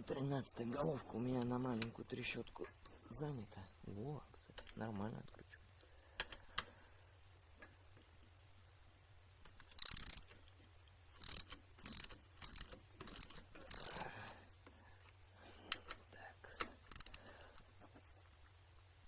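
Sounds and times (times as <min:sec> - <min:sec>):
metal tool clicks: 0:04.5 - 0:04.8, 0:09.4 - 0:10.4, 0:11.2 - 0:14.0, 0:16.6 - 0:17.2
ratchet wrench clicking: 0:09.4 - 0:10.4, 0:11.1 - 0:14.1, 0:16.8 - 0:17.2.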